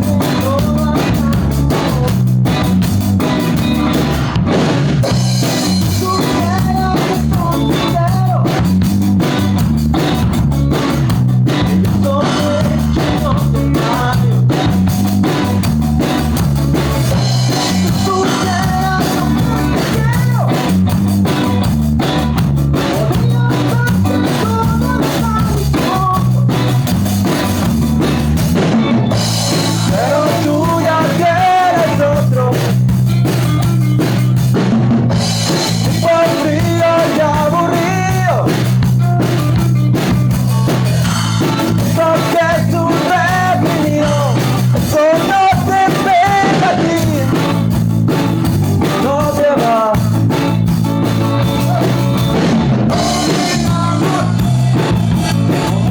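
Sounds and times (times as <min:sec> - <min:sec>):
rock song: 0:00.0 - 0:55.9
person singing melody: 0:17.3 - 0:20.7, 0:22.8 - 0:26.8, 0:29.1 - 0:32.8, 0:35.8 - 0:39.6, 0:51.3 - 0:55.9.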